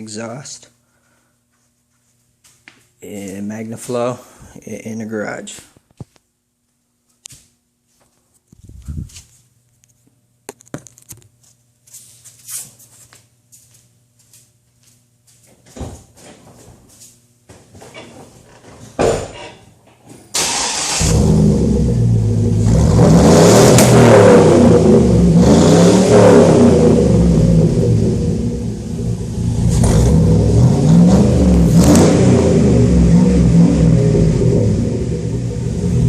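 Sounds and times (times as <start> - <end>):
truck engine starting and revving: 20.4 - 36.0.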